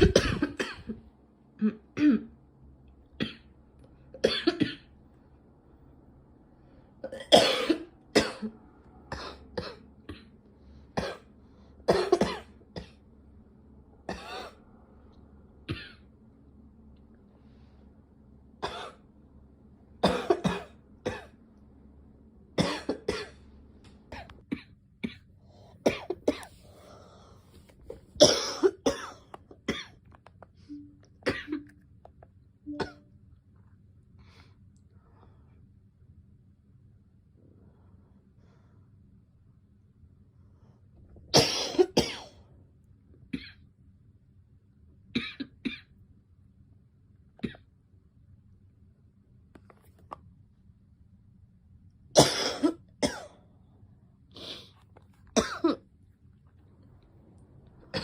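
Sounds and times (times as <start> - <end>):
girl coughing: 0.0 - 1.0, 1.6 - 2.3, 4.2 - 4.9, 7.1 - 8.5, 11.9 - 12.9, 20.0 - 21.3, 22.6 - 23.4, 25.8 - 26.5, 28.2 - 29.9, 31.3 - 31.7, 41.4 - 42.3, 52.2 - 53.4, 55.4 - 55.8.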